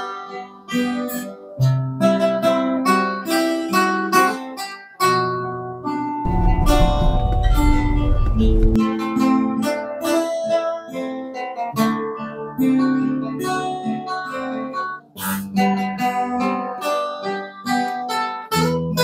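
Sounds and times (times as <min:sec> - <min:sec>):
acoustic guitars playing: 0:05.5 - 0:09.1, 0:10.1 - 0:18.8
dense low rumble: 0:06.3 - 0:08.8.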